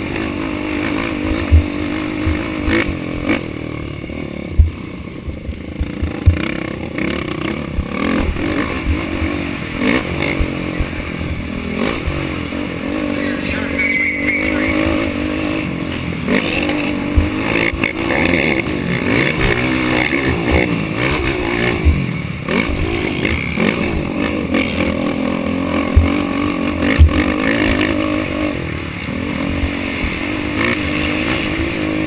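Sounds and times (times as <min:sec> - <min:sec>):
atv engine revving: 0:00.0 - 0:32.0
heavy thumps: 0:01.4 - 0:02.6, 0:04.5 - 0:06.5.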